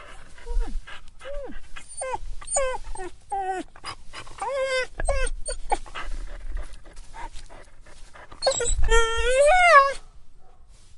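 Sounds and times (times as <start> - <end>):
dog whimpering: 0.0 - 3.8, 4.4 - 5.9, 8.4 - 10.0.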